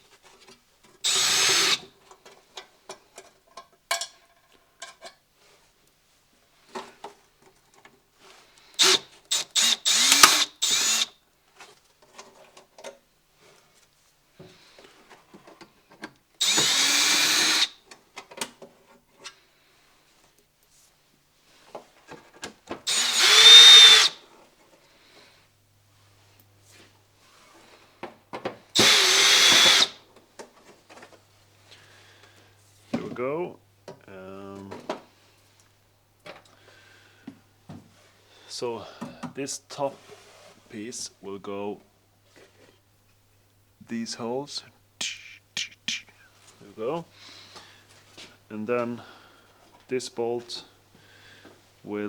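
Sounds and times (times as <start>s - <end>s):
cordless drill bursts: 1.0s - 1.9s, 8.8s - 11.2s, 16.4s - 17.8s, 22.9s - 24.2s, 28.8s - 30.0s.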